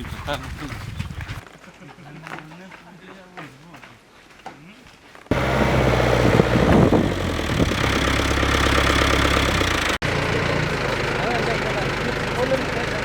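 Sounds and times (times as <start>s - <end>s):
engine running steadily: 5.3s - 13.0s.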